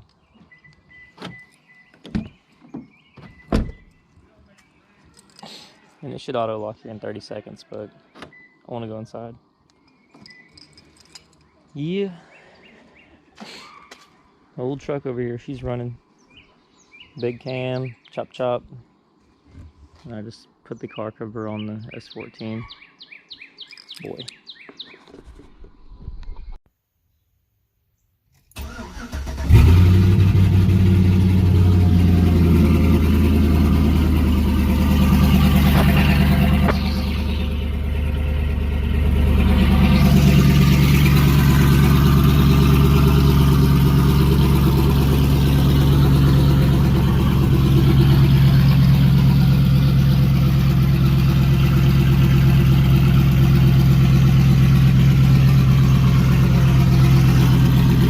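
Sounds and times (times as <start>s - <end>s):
vee-eight engine idling choppily: 29.6s - 58.0s.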